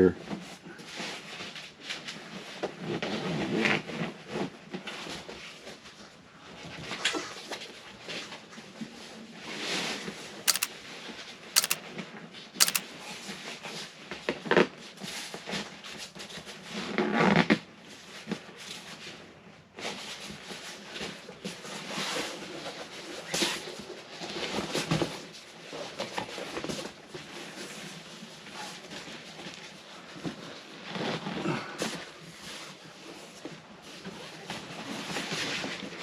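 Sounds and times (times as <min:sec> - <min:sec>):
sharp clicks: 0:10.5 - 0:10.7, 0:11.6 - 0:11.8, 0:12.6 - 0:12.8.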